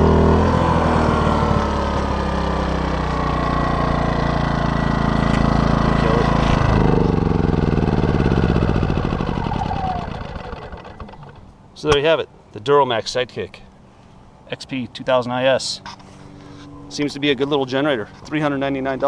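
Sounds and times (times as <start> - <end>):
generator engine changing speed: 0.0 - 11.6.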